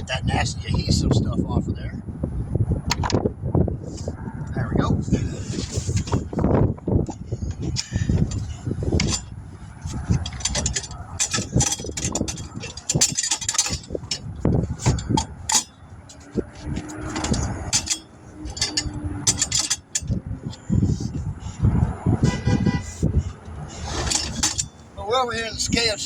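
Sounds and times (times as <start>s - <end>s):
hand tools scraping a wheel rim: 5.2s - 25.0s.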